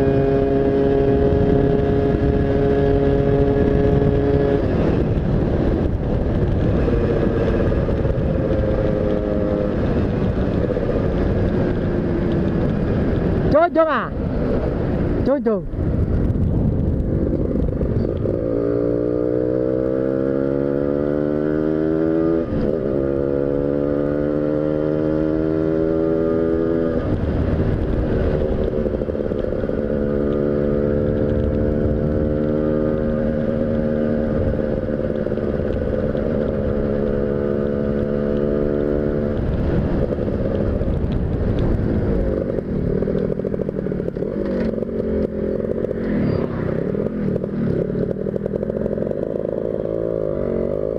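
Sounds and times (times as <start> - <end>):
motorcycle engine accelerating: 0.0 - 50.9.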